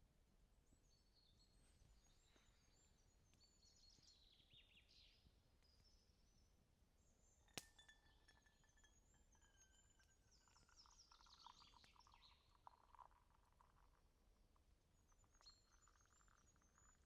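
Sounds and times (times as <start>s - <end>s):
faint songbirds trilling: 0.8s - 14.0s, 15.0s - 17.0s.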